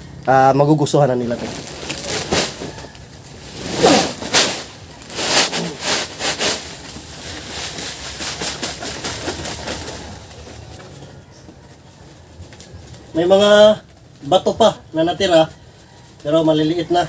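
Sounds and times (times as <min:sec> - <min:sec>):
sawdust pouring and rustling: 0:01.2 - 0:08.6.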